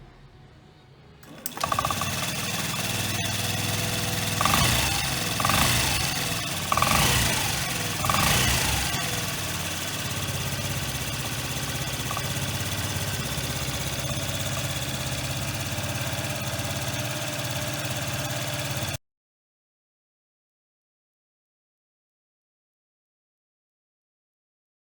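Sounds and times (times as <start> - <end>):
scooter engine revving and idling: 1.2 - 19.0.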